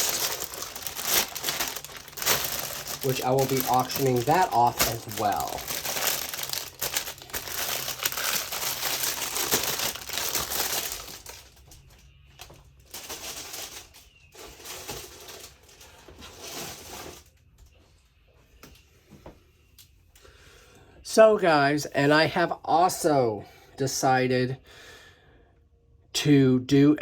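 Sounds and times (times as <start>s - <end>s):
plastic packaging crinkling: 0.0s - 17.4s.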